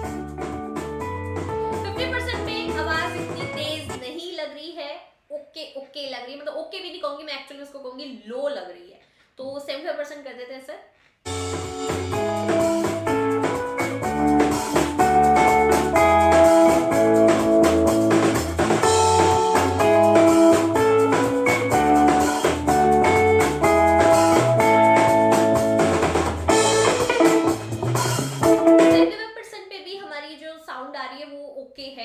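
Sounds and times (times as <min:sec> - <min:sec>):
song with steady drum beat: 0:00.0 - 0:04.0, 0:11.3 - 0:29.1.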